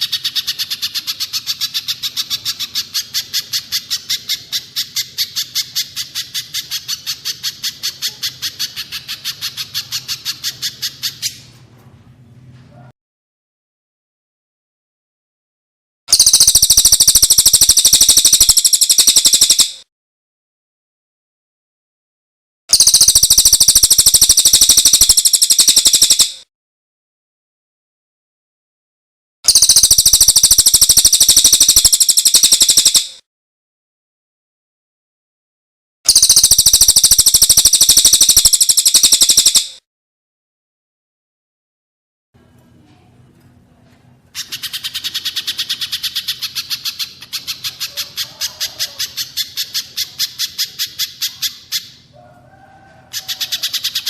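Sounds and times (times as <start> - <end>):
songbird trill: 0.0 - 11.4, 16.1 - 19.8, 22.7 - 26.4, 29.5 - 33.2, 36.1 - 39.8, 44.4 - 52.3, 53.1 - 54.0.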